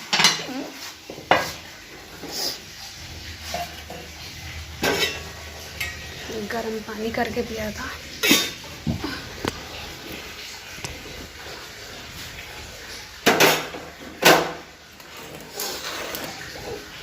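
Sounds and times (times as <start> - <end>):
household clattering knocks: 13.2 - 14.6.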